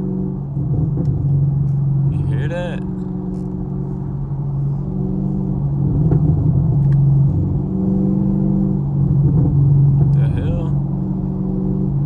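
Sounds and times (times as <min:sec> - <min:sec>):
car exhaust drone: 0:00.0 - 0:12.0.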